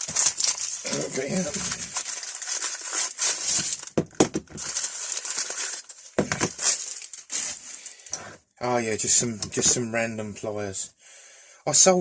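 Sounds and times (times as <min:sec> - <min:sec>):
wrapping rustling and crinkling: 0:00.0 - 0:08.4.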